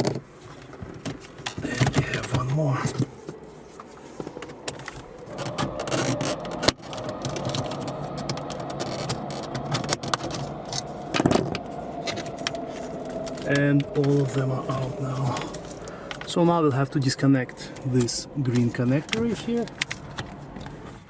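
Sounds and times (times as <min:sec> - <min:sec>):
rattling and small clicks: 0:17.7 - 0:21.0.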